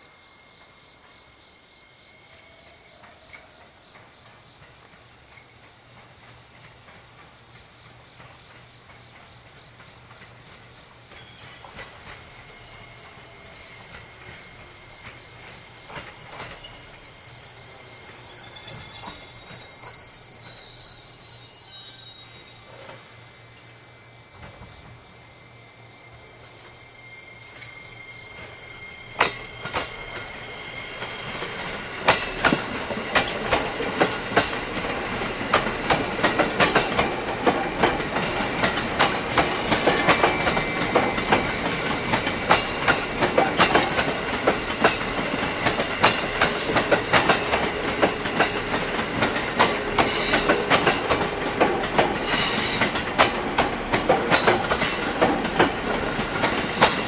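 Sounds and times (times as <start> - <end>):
train wheels clicking over rail joints: 3.0 - 19.8, 27.5 - 57.0
high wheel squeals: 11.2 - 22.9, 26.1 - 32.4, 33.0 - 53.2.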